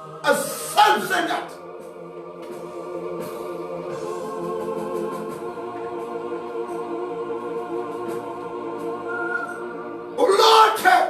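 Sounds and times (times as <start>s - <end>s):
church music of held chords: 0.0s - 11.0s.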